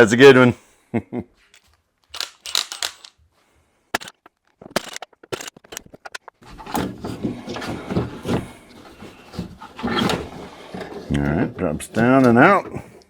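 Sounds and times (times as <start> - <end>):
rattling and rustling: 1.5 - 3.2, 4.0 - 11.1
hand tools clicking on metal: 1.6 - 3.2, 4.0 - 6.3.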